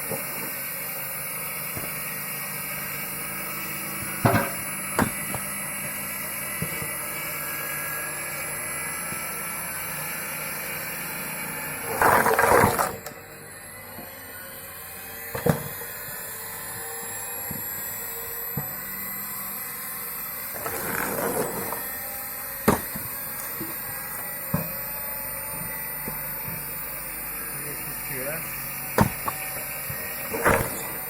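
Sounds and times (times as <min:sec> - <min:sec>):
electric motor running: 0:00.0 - 0:31.0
wood tearing apart: 0:28.9 - 0:31.0.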